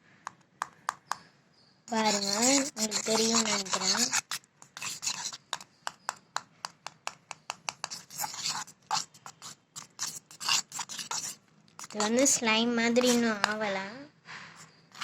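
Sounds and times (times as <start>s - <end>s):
wet scraping: 1.9s - 5.6s, 7.8s - 13.6s, 14.6s - 15.0s.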